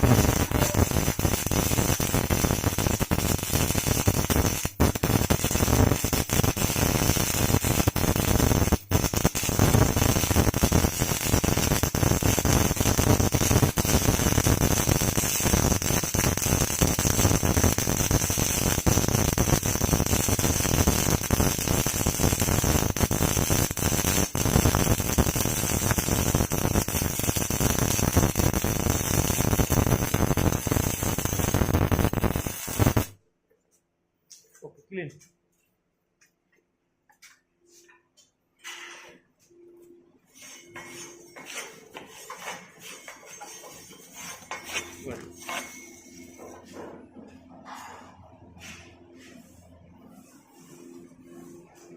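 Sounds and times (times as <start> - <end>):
welding arc crackling and sizzling: 0.0 - 33.2, 40.3 - 46.8.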